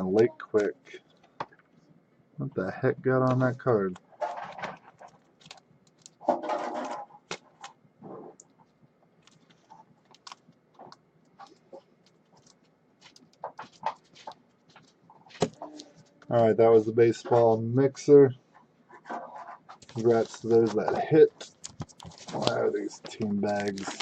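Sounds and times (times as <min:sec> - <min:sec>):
plastic bags crinkling: 0:04.1 - 0:07.7, 0:19.8 - 0:24.0.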